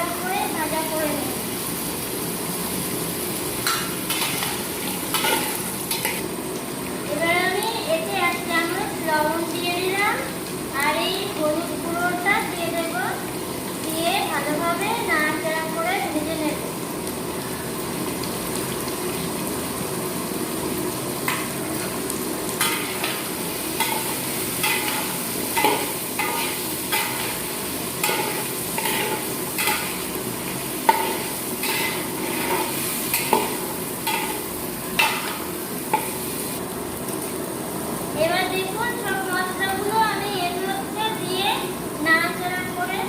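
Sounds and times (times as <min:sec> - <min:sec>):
vegetables sizzling in oil: 0:00.0 - 0:43.0
metal spatula scraping pan: 0:28.0 - 0:30.0.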